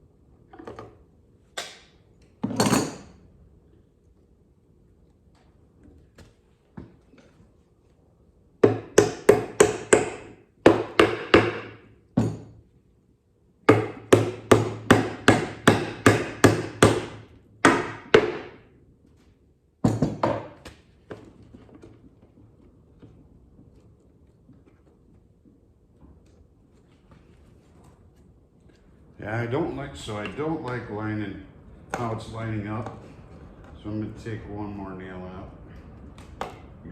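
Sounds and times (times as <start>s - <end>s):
hammer striking nails into wood: 8.6s - 12.4s, 13.7s - 18.6s.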